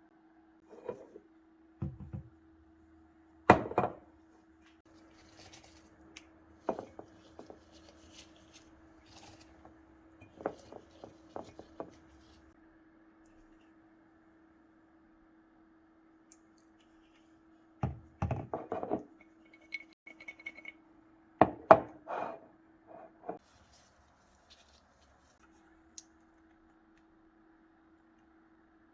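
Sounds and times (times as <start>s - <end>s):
faint steady hum: 0.0s - 28.9s.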